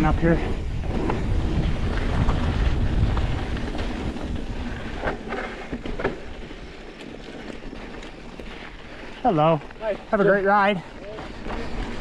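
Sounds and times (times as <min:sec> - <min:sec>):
wind buffeting microphone: 0:00.0 - 0:10.2
bike rolling on rocky trail: 0:00.0 - 0:12.0
bike knocks and rattles: 0:00.8 - 0:08.6.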